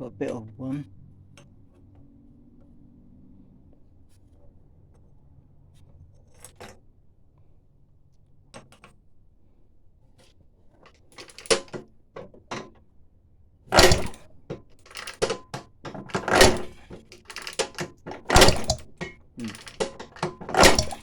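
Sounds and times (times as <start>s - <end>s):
knocks and clunks on mower: 11.2s - 12.8s, 13.7s - 21.0s.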